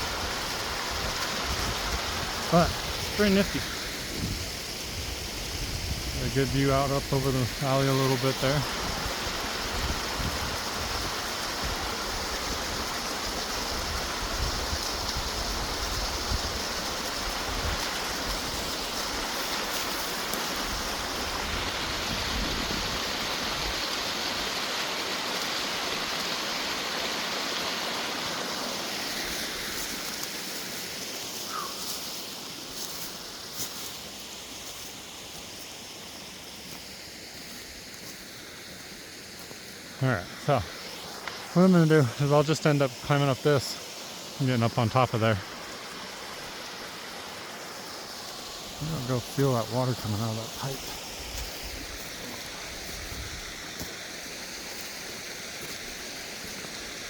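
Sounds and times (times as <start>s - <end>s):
water pouring from pipe: 0.0s - 31.1s
waterfall splashing: 0.0s - 57.0s.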